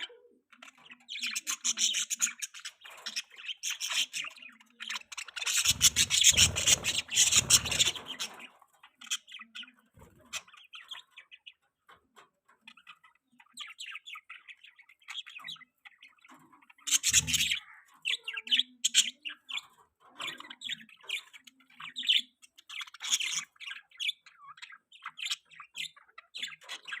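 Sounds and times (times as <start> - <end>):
budgerigars chirping: 0.0 - 11.6, 12.7 - 27.0.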